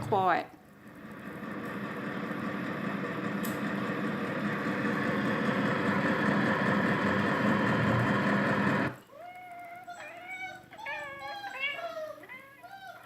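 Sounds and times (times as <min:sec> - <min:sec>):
truck engine running: 0:00.9 - 0:09.0
high-pitched animal cries: 0:09.1 - 0:13.0.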